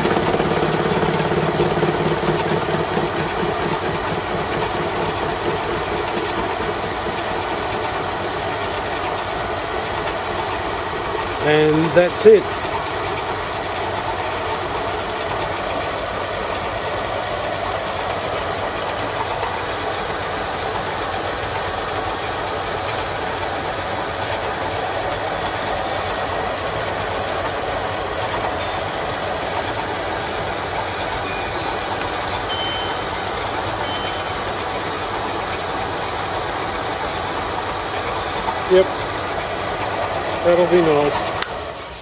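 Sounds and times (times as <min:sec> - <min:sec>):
metal lathe running: 0:00.0 - 0:42.0.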